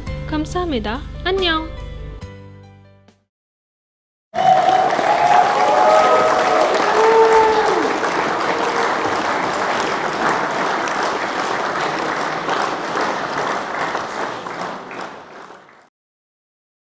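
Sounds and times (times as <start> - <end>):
crowd applauding: 4.4 - 15.9.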